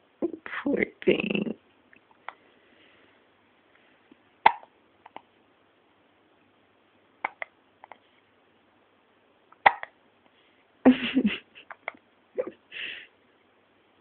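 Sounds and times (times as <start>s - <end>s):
baby hiccuping: 4.4s - 5.2s, 7.2s - 8.0s, 9.6s - 10.0s.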